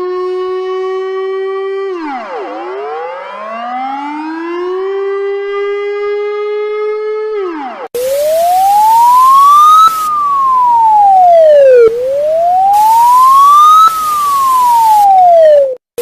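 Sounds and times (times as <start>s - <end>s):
siren wailing: 0.0s - 15.8s
loud hiss: 8.0s - 10.9s, 11.9s - 15.2s.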